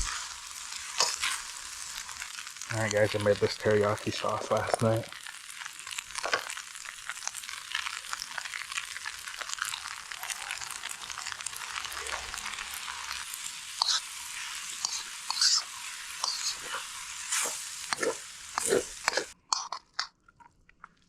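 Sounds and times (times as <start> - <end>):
food sizzling in a pan: 0.0 - 19.6
utensil scraping a pan: 13.8 - 19.4.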